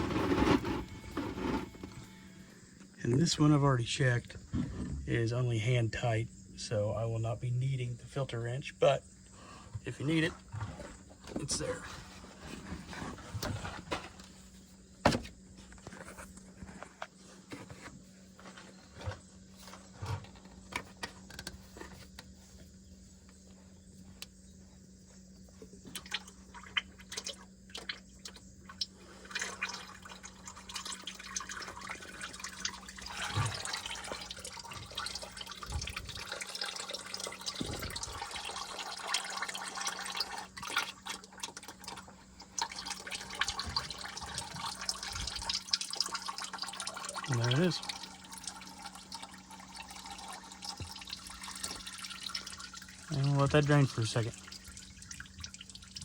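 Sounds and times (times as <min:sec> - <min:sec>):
faint steady hum: 0:00.0 - 0:56.0.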